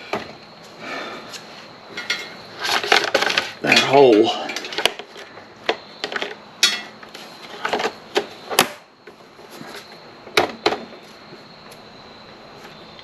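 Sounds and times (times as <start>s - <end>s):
tools clicking and knocking: 5.7s - 7.0s.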